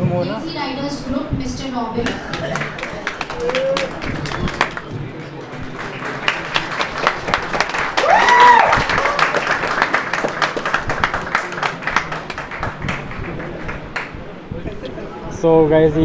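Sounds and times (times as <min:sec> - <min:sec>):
audience applauding: 0:02.1 - 0:14.2
high cheer: 0:02.8 - 0:04.6, 0:07.7 - 0:10.0.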